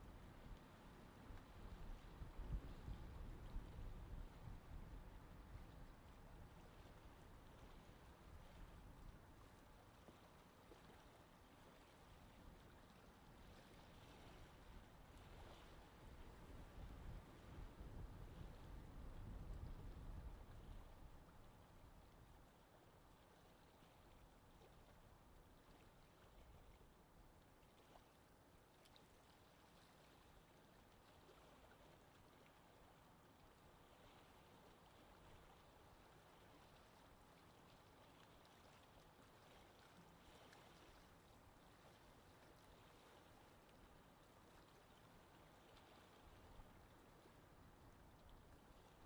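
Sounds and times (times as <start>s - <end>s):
gentle breeze: 0.0s - 49.0s.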